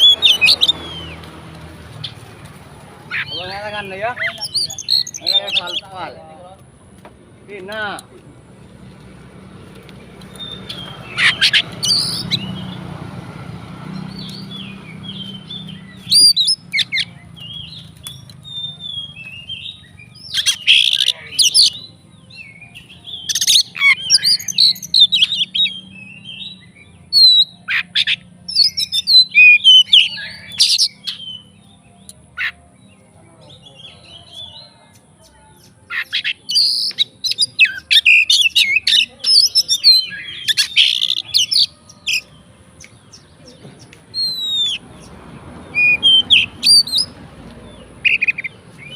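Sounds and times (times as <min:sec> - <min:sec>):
songbird whistling and chattering: 0:00.0 - 0:01.3, 0:03.1 - 0:06.1, 0:10.3 - 0:12.8, 0:14.0 - 0:32.6, 0:35.6 - 0:48.9.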